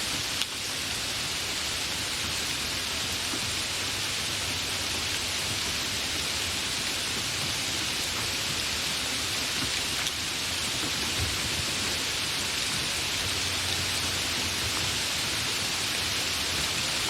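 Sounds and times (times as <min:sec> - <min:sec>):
steady rain: 0:00.0 - 0:17.0.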